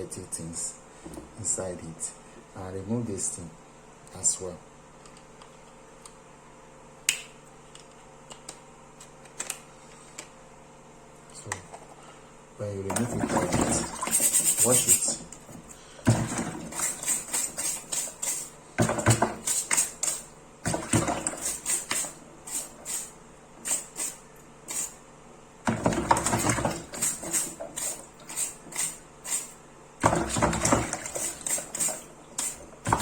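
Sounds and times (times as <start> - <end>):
brush scrubbing plastic filter: 12.9 - 25.0, 25.7 - 33.0.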